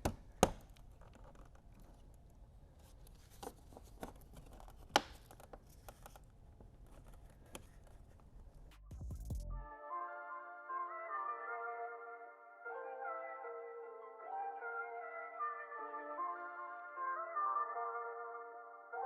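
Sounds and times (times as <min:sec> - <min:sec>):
plastic clicks and scrapes: 0:00.0 - 0:02.2, 0:02.8 - 0:08.3.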